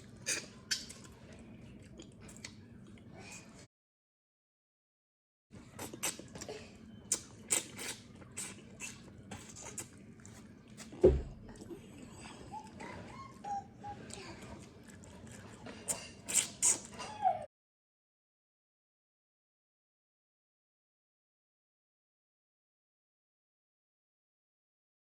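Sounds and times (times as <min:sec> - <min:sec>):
wet chewing: 0:00.0 - 0:03.1, 0:05.7 - 0:12.8, 0:13.9 - 0:17.0.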